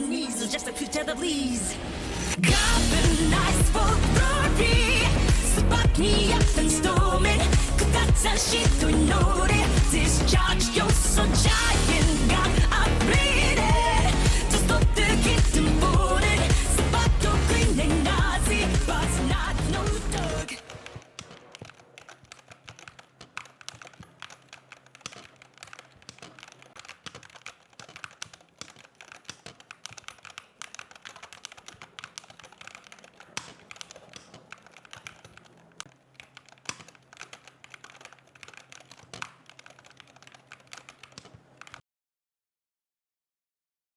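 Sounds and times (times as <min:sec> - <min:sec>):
keyboard key clicks: 0:20.6 - 0:41.8.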